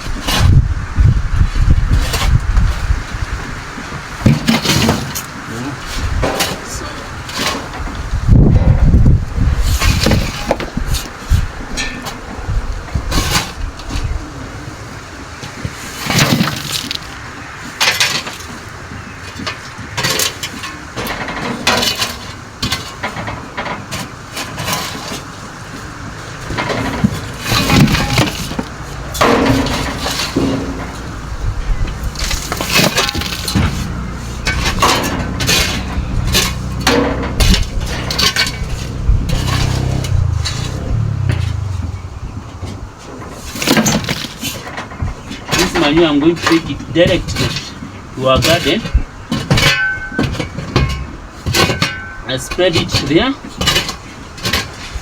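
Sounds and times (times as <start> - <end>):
hard objects clattering: 15.6 - 17.2, 19.4 - 52.2
low steady hum: 26.4 - 43.1.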